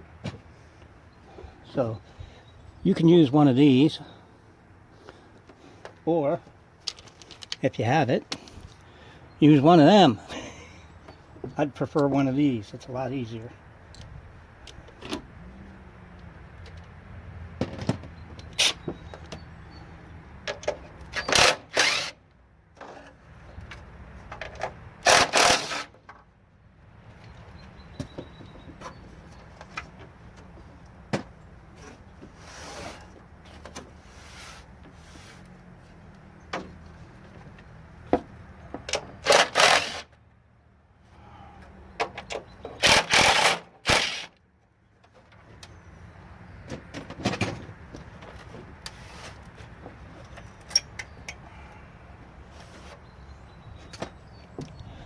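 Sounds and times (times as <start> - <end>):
short rattling scrapes: 31.8 - 33.2.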